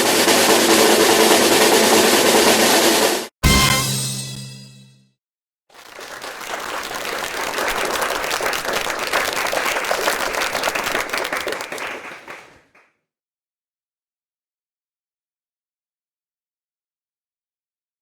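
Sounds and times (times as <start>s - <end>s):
crowd applause and cheering: 5.7s - 12.9s.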